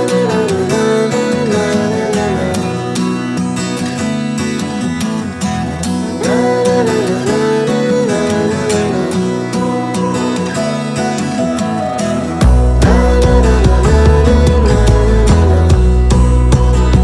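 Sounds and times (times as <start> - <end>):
country music with acoustic guitar: 0.0 - 17.0.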